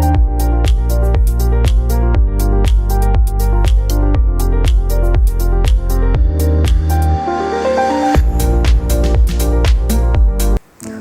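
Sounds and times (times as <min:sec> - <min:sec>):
electronic dance music: 0:04.7 - 0:10.6.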